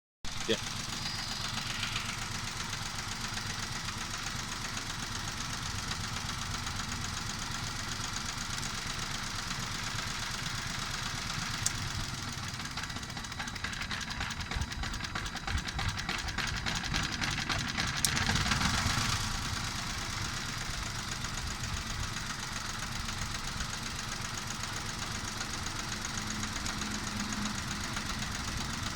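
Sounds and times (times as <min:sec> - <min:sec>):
car engine misfiring: 0:00.3 - 0:28.9.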